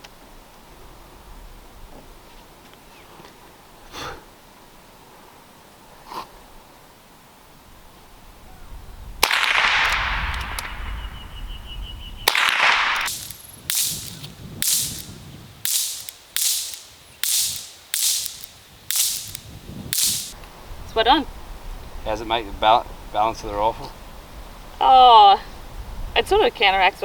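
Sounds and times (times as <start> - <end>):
rifle shots: 9.2 - 10.2, 12.3 - 20.4.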